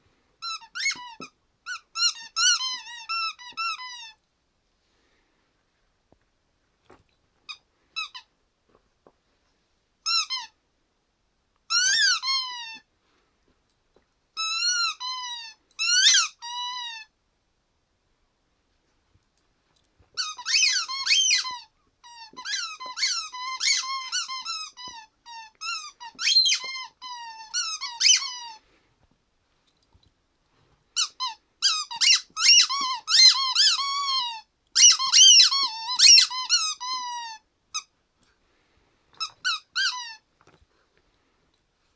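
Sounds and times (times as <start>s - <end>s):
rubber squeaky toy squeaking: 0.4s - 4.2s, 7.5s - 8.3s, 10.0s - 10.6s, 11.7s - 12.8s, 14.4s - 17.1s, 20.2s - 28.6s, 31.0s - 37.9s, 39.2s - 40.3s.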